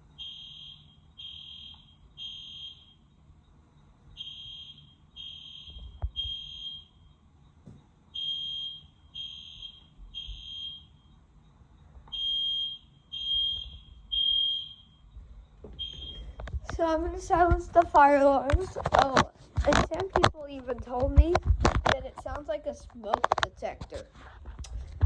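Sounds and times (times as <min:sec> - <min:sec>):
fire alarm beeping: 0:00.0 - 0:16.7.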